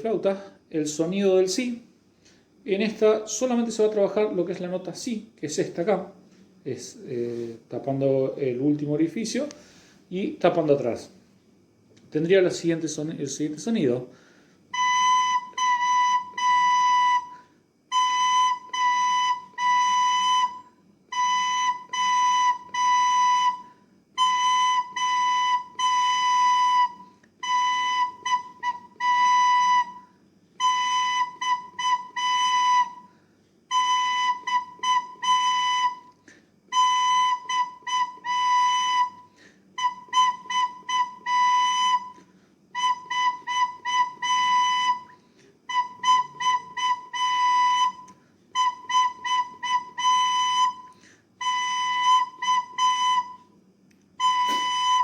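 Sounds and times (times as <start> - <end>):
recorder playing one note: 54.2 - 55.0.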